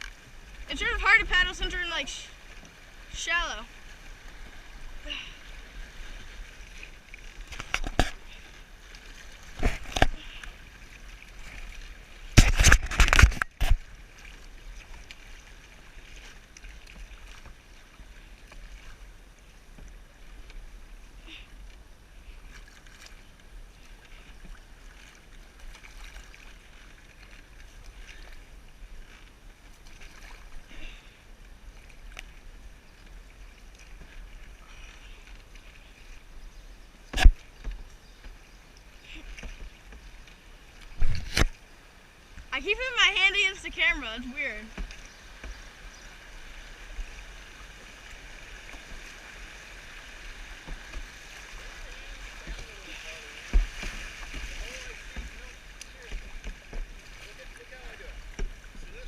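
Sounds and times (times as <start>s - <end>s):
faint water sounds: 0.0s - 59.0s
canoe knocks and bumps: 12.3s - 13.8s, 37.1s - 38.4s, 50.6s - 58.9s.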